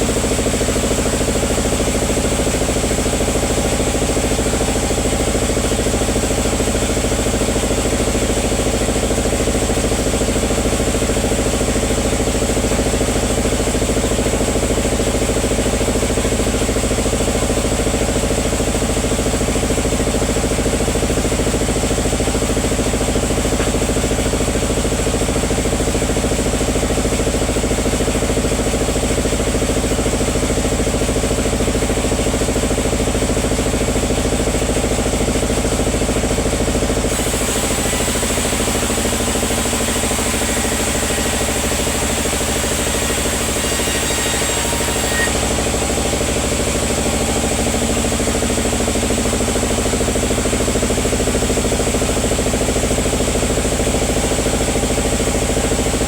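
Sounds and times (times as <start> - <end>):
sawmill machinery engine drone: 0.0 - 56.0
high machine whine: 37.1 - 50.4.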